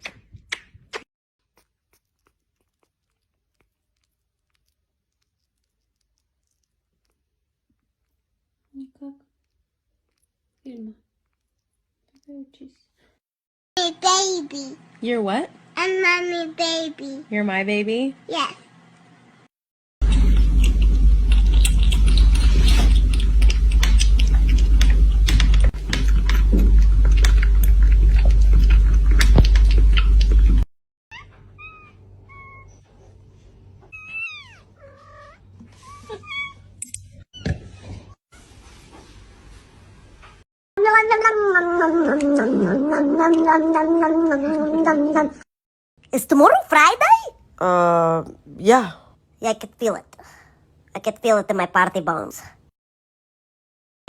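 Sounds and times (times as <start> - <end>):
kitten lapping milk: 1.4 - 12.5, 20.6 - 30.6.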